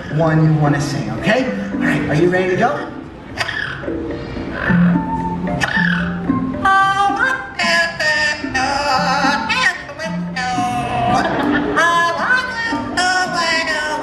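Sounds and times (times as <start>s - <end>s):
musical backing: 0.0s - 14.0s
parrot singing: 3.3s - 14.0s.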